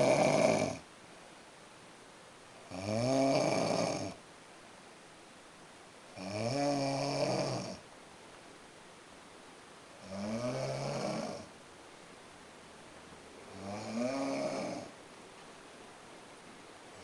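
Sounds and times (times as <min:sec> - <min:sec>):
loud snoring: 0:00.0 - 0:00.8, 0:02.7 - 0:04.2, 0:06.2 - 0:07.8, 0:10.0 - 0:11.5, 0:13.5 - 0:15.0.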